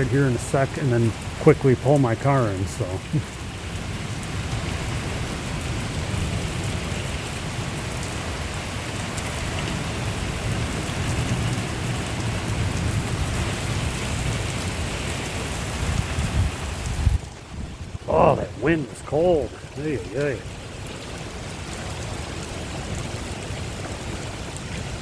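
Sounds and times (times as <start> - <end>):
heavy rain falling: 0.0 - 25.0
wind buffeting microphone: 12.5 - 21.7.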